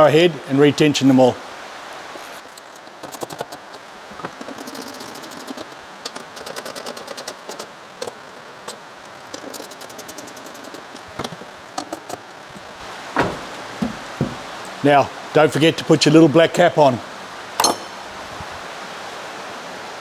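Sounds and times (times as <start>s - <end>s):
tool knocking on metal: 13.2s - 14.5s.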